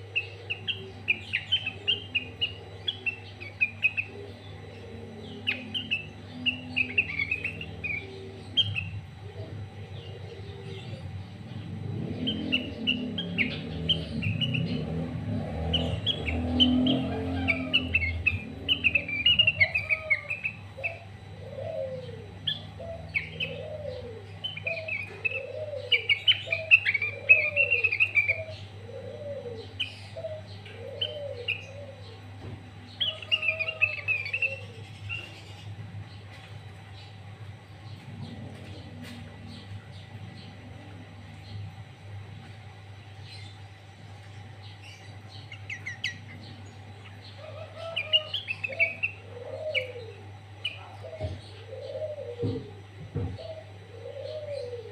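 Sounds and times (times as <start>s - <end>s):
bulbul singing chirpy warbling phrases: 0.0s - 35.8s, 42.8s - 52.0s
bird rising and falling call: 11.8s - 32.2s, 32.8s - 35.7s, 45.1s - 50.8s.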